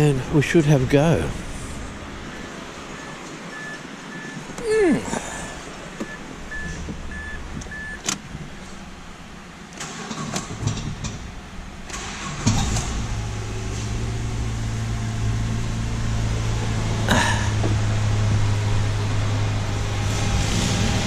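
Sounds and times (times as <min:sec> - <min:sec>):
engine cranking and idling: 0:00.0 - 0:21.0
car warning chime: 0:02.3 - 0:04.4, 0:06.0 - 0:08.1.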